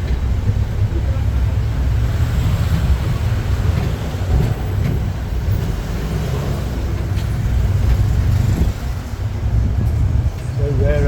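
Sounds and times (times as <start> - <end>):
road noise: 0.0 - 11.0
vehicle engine rumble: 0.0 - 11.0.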